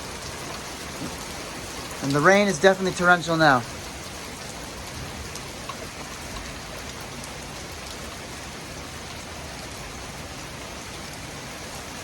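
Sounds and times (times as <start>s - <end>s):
rain drops ticking: 0.0s - 12.0s
torrential rain hissing: 0.0s - 12.0s.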